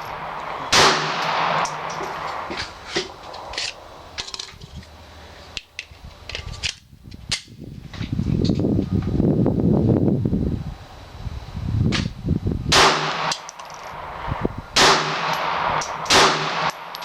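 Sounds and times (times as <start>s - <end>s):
loud rustling rumble: 0.0s - 12.8s, 13.7s - 17.0s
gunshots: 0.1s - 2.6s, 12.7s - 13.5s, 14.8s - 17.0s.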